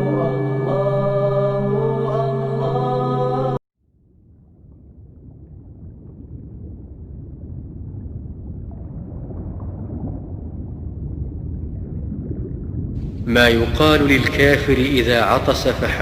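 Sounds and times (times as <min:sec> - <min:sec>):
low rumbling noise: 0:04.0 - 0:16.0.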